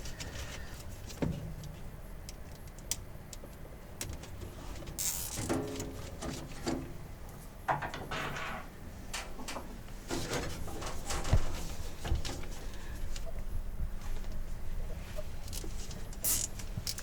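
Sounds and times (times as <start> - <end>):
zip tie clicks and rattles: 15.5 - 17.0.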